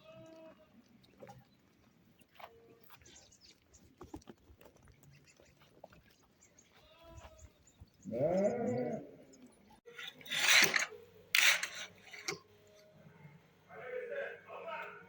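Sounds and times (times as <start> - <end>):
faint bleat: 0.0 - 0.7, 6.8 - 7.4, 8.1 - 9.1.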